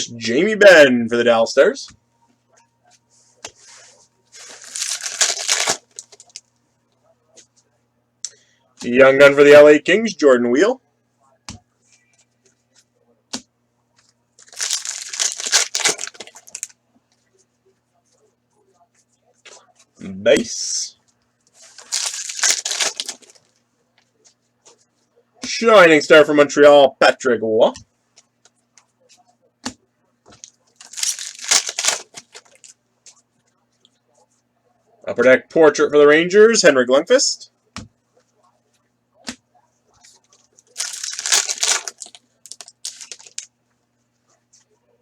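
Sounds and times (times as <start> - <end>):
foil wrapper crinkling and tearing: 4.4 - 6.4, 14.4 - 16.7, 21.6 - 23.5, 30.8 - 32.7, 40.7 - 43.5.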